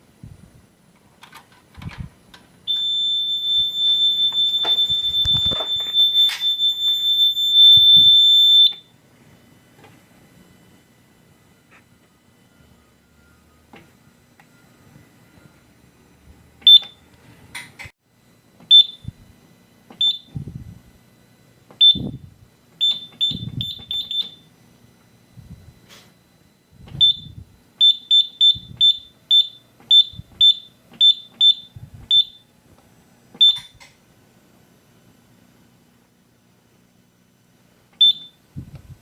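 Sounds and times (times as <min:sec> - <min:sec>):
alarm panel keypad beeps: 0:02.7 - 0:08.9, 0:16.6 - 0:17.0, 0:18.7 - 0:19.1, 0:20.0 - 0:20.3, 0:21.8 - 0:22.2, 0:22.8 - 0:24.5, 0:27.0 - 0:32.4, 0:33.4 - 0:33.8, 0:38.0 - 0:38.4.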